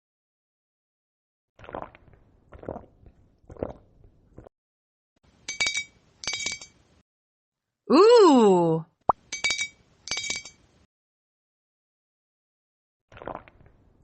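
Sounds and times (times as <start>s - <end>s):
glassy clinks: 5.5s - 6.8s, 9.3s - 10.6s.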